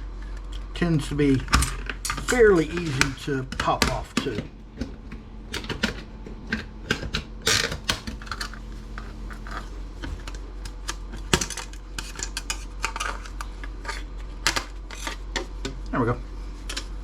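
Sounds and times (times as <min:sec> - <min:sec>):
sharp plastic crack: 0:01.4 - 0:08.6
plastic clicking and scraping: 0:01.4 - 0:15.9, 0:16.6 - 0:17.0.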